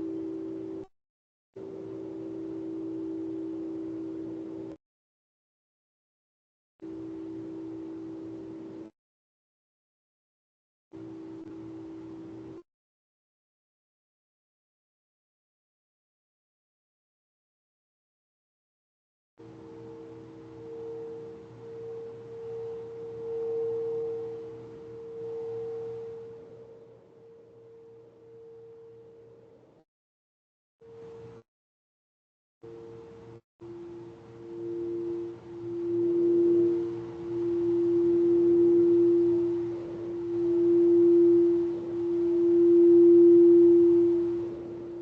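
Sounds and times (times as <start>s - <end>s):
singing bowl ringing hum: 0.0s - 0.9s, 1.6s - 4.8s, 6.8s - 9.0s, 11.0s - 12.7s, 19.4s - 29.8s, 30.8s - 31.5s, 32.6s - 45.0s.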